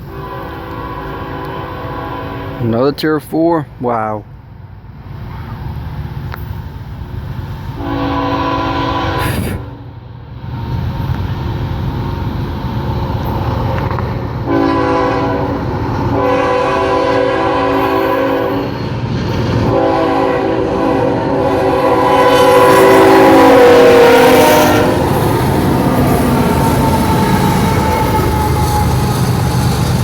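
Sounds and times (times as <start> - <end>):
locomotive air horn blasts: 0.0 - 2.7, 7.8 - 9.8, 14.4 - 18.8, 19.7 - 29.4
diesel engines rumbling: 0.0 - 30.0.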